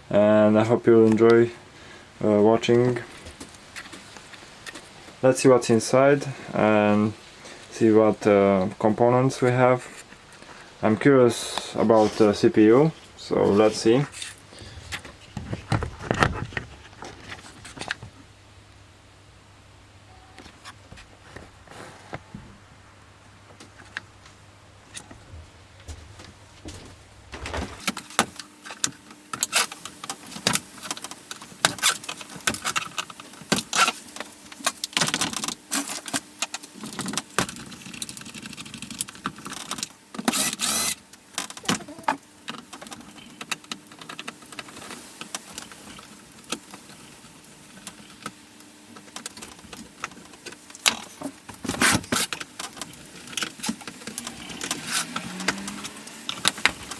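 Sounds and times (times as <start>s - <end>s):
scraping: 24.9s - 28.2s.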